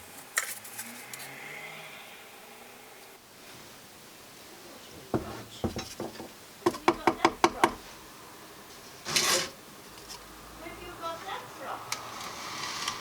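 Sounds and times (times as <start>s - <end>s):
wood knocking: 5.1s - 7.8s
scraping: 8.9s - 9.6s.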